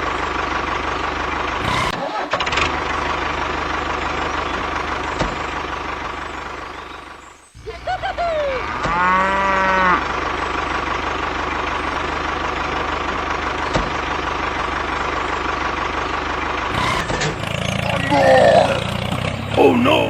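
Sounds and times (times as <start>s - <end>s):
toy truck motor drone: 1.6s - 2.7s, 16.7s - 18.8s.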